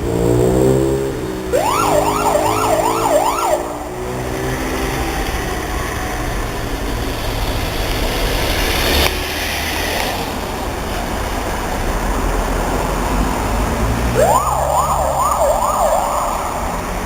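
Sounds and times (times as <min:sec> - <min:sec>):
vehicle and road noise: 0:00.0 - 0:17.0
ambulance siren yelping: 0:01.4 - 0:06.4, 0:14.2 - 0:17.0.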